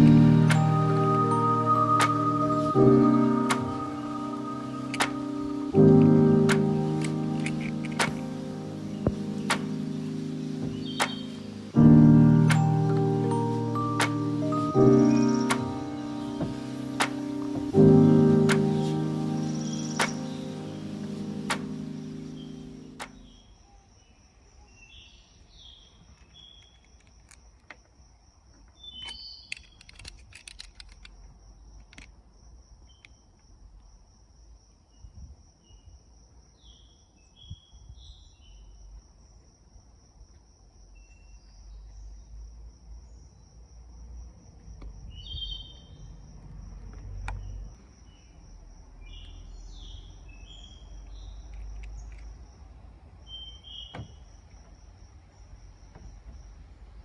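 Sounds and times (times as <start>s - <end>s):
birds chirping: 0.0s - 23.6s
insect trill: 0.0s - 25.0s.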